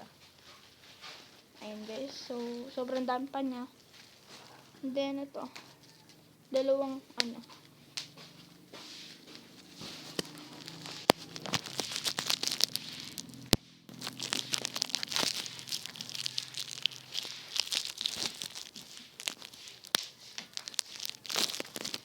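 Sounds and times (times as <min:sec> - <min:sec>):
bubble wrap crinkling: 0:00.0 - 0:22.0
bubble wrap snapping: 0:01.6 - 0:04.8, 0:06.8 - 0:08.2, 0:09.1 - 0:22.0.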